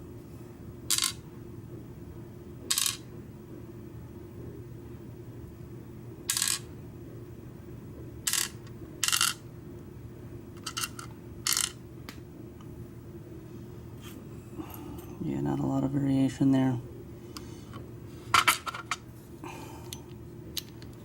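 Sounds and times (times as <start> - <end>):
metal pins clinking on hard surface: 0.9 - 1.2, 2.7 - 3.0, 6.3 - 6.6, 8.3 - 9.4, 10.6 - 11.8.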